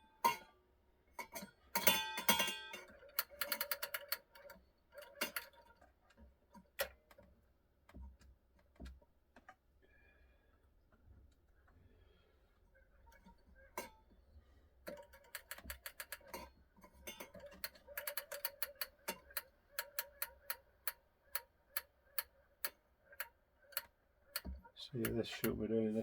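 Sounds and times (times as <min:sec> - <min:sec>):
clock ticking: 0:17.5 - 0:26.0.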